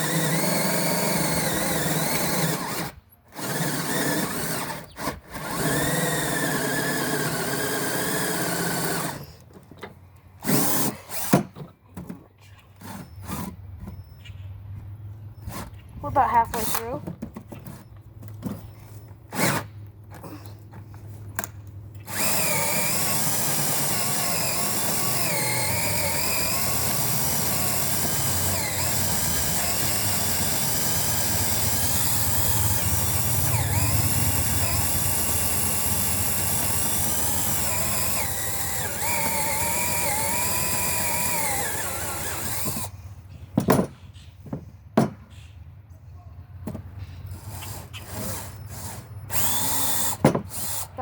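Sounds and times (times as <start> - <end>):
drill boring through wood: 0.0 - 9.3, 22.1 - 42.9, 48.1 - 50.9.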